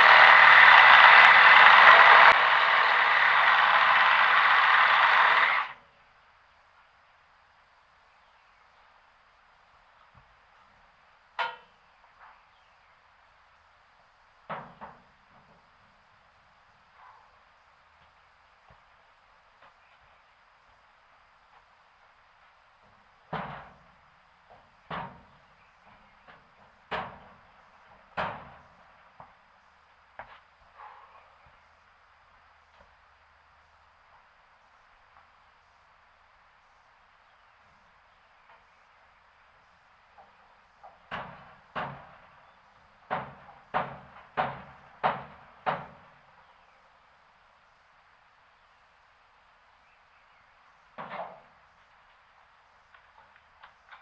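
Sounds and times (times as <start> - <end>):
sharp blows: 0.0 - 5.8.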